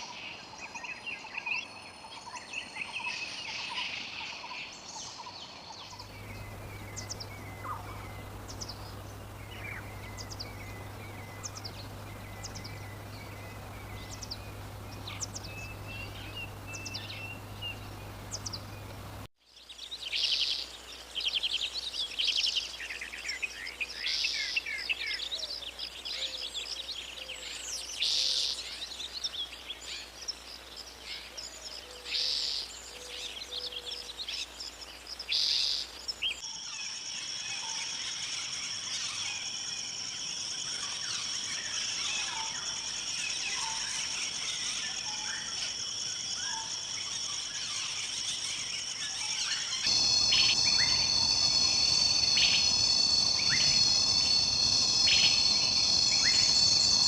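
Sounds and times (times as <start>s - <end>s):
birds singing: 5.8s - 36.3s, 48.8s - 57.0s
low steady hum: 6.0s - 19.3s, 49.9s - 57.0s.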